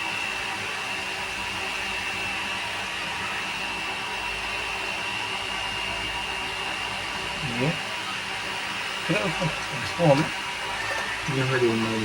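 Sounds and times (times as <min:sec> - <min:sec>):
electric motor whirring: 0:09.2 - 0:12.0.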